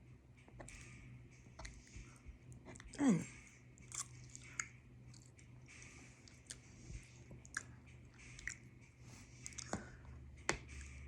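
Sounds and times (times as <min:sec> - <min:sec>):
person chewing food: 0:03.8 - 0:11.0.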